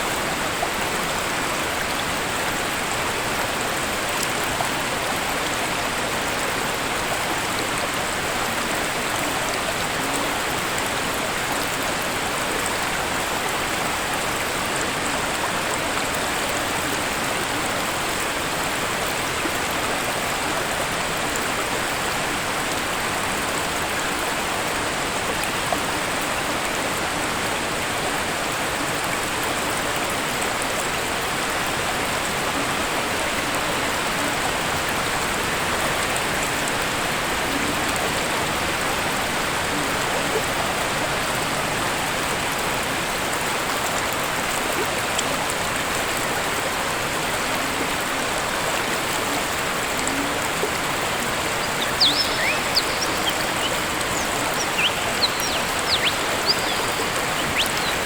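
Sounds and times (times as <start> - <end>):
waterfall rushing: 47.4 - 58.0.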